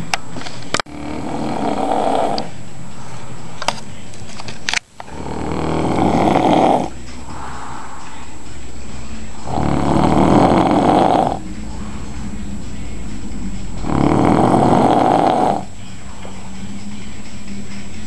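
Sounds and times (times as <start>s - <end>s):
quiet breathing: 0.5s - 3.6s, 5.0s - 16.8s
heavy snoring: 0.8s - 3.3s, 5.0s - 8.2s, 9.2s - 15.8s.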